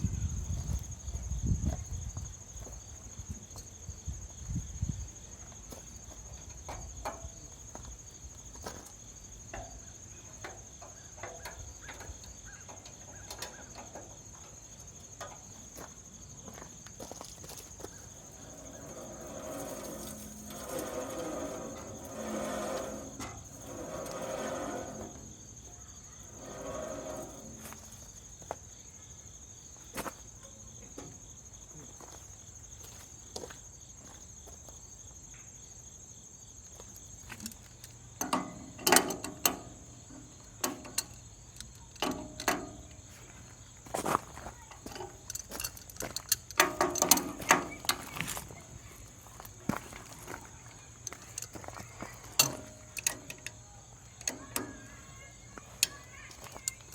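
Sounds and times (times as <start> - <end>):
crickets chirping: 0.0 - 56.9
wrench clicking and clanking: 44.8 - 48.1, 51.0 - 53.6.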